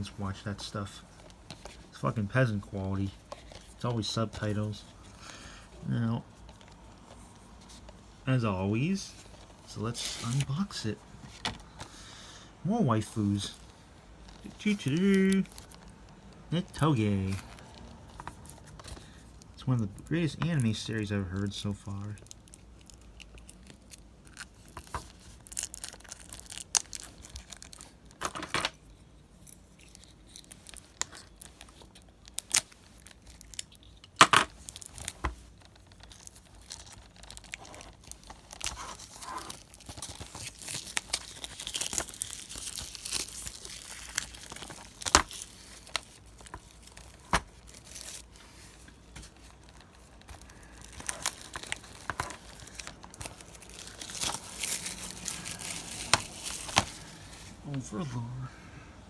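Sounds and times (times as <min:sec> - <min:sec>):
plastic shrink-wrap tearing and crinkling: 0:16.6 - 0:28.5, 0:29.3 - 0:57.6.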